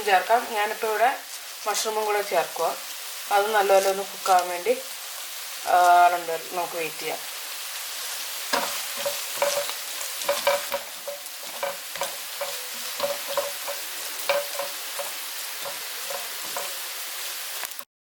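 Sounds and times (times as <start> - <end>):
vegetables sizzling in a pan: 0.0 - 17.9
spoon scraping a pan: 7.8 - 17.6.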